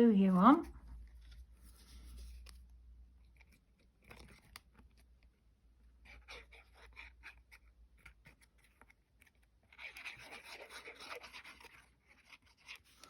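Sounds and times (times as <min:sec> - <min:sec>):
paper clicks: 0:03.3 - 0:05.0
glue scratching on card: 0:06.0 - 0:13.0.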